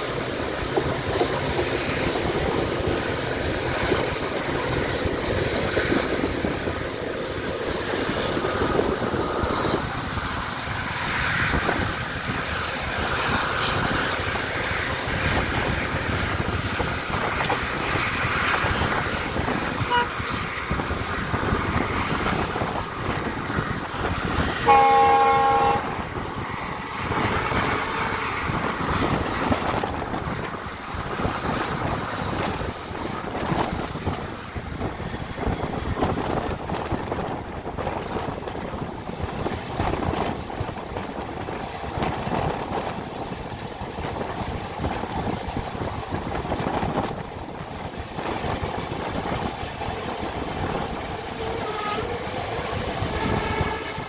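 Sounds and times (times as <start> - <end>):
moving train running noise: 0.0 - 54.0
locomotive horn blast: 19.8 - 20.3, 24.6 - 26.2, 51.5 - 54.0.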